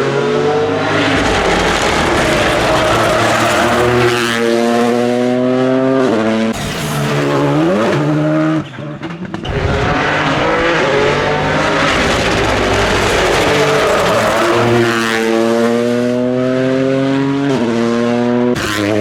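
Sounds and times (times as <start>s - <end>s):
exhaust crackles: 0.0s - 5.3s, 6.6s - 16.3s
car engine accelerating hard: 0.0s - 19.0s.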